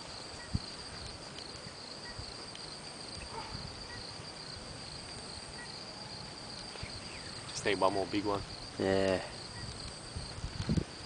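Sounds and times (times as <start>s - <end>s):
faint outdoor hiss: 0.0s - 11.0s
insects chirping: 0.0s - 11.0s.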